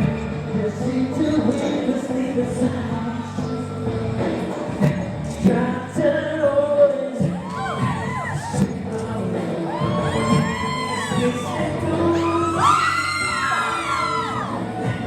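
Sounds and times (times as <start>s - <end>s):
music: 0.0s - 15.0s
high-pitched screams: 7.4s - 8.6s, 9.6s - 15.0s
audience cheering: 9.7s - 15.0s.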